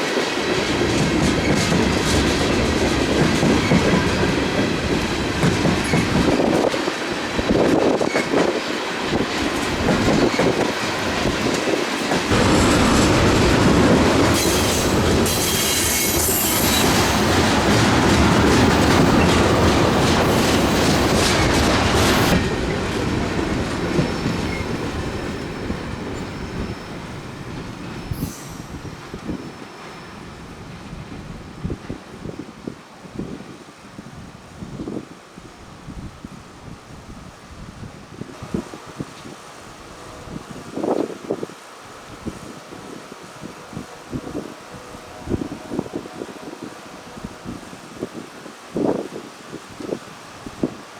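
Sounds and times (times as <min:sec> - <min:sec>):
wheels clattering over rail joints: 0:00.0 - 0:28.3
freight train rolling past: 0:00.0 - 0:32.9, 0:38.3 - 0:50.9
high wheel squeal: 0:12.3 - 0:22.4, 0:24.0 - 0:30.6.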